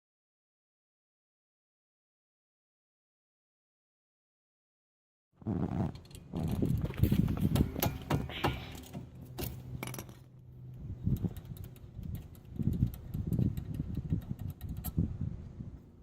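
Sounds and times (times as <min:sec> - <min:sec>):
low steady hum: 0:05.4 - 0:16.0
metal tools clinking: 0:06.0 - 0:10.3.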